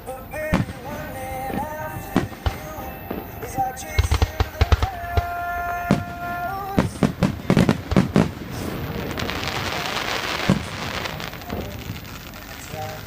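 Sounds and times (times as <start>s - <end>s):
held musical note: 0.0s - 9.7s
fireworks bangs: 0.0s - 13.0s
fireworks crackling: 0.0s - 13.0s.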